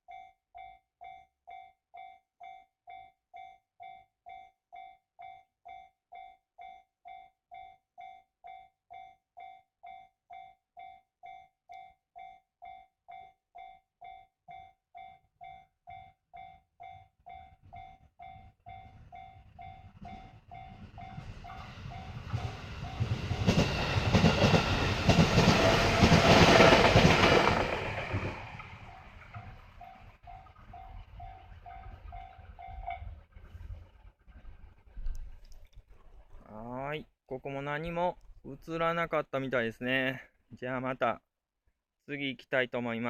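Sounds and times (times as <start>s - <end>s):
level crossing warning bell: 0.0s - 33.2s
train passing: 17.3s - 34.8s.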